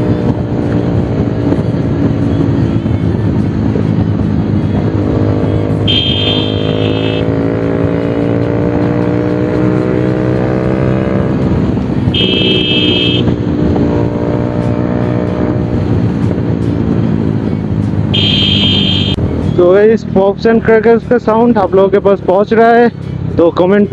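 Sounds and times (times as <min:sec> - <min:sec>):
motorcycle engine accelerating: 0:03.4 - 0:19.2.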